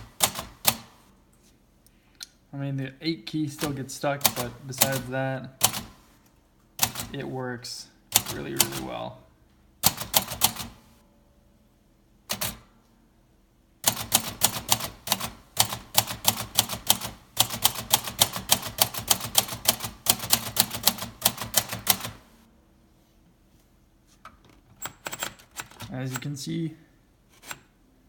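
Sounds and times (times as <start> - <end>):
manual typewriter typing: 0.0 - 1.0, 3.6 - 6.0, 6.8 - 7.2, 8.1 - 9.1, 9.8 - 10.8, 12.3 - 12.6, 13.8 - 22.3, 24.8 - 26.4.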